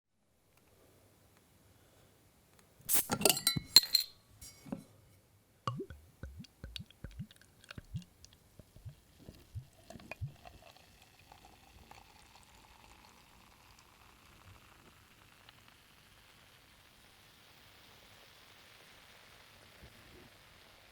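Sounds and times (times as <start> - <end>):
bottle cap prised off: 2.9 - 4.8
liquid glugging and pouring: 5.7 - 13.8.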